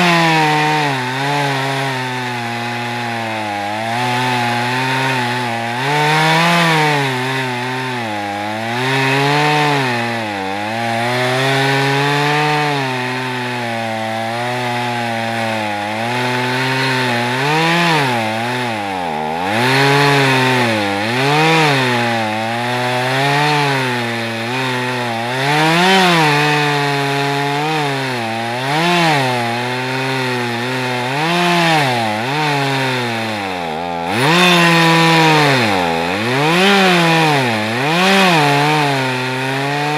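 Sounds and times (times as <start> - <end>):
chainsaw cutting wood: 0.0 - 39.9.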